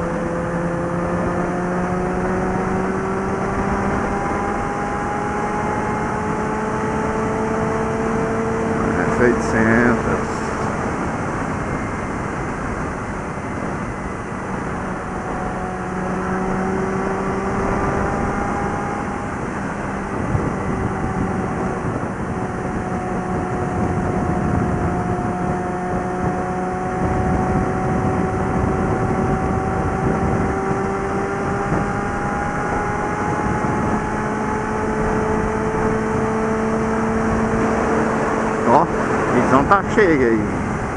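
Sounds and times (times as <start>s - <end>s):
motorcycle engine cruising: 0.0s - 40.9s
wind noise: 0.0s - 40.9s.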